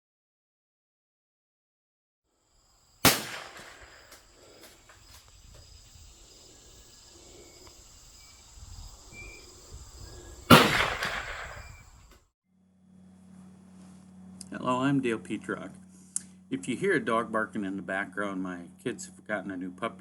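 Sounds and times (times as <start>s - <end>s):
gunshots echoing: 3.0s - 5.2s, 10.5s - 12.0s.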